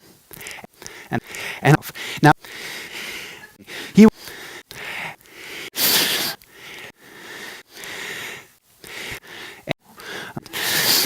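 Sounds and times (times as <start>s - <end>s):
person breathing heavily: 0.0s - 11.0s.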